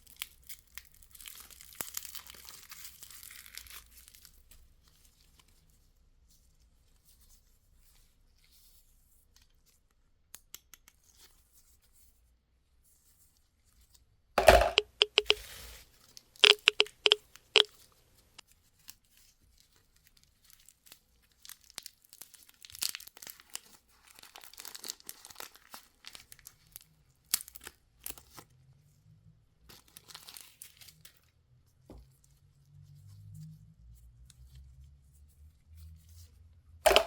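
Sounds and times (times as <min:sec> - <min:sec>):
plastic wrapper tearing: 0:21.4 - 0:23.6, 0:24.2 - 0:26.2
plastic wrapper crinkling: 0:24.2 - 0:25.7.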